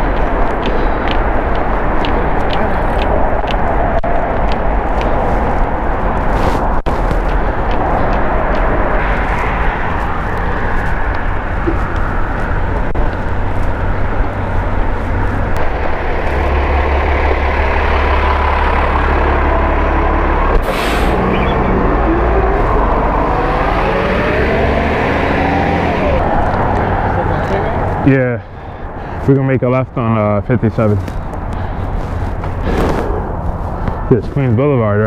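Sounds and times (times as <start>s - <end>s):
passing traffic: 0.0s - 35.0s
wind rumbling on microphone: 0.0s - 35.0s
short hiss: 20.6s - 21.2s
wavering tones: 21.1s - 27.2s.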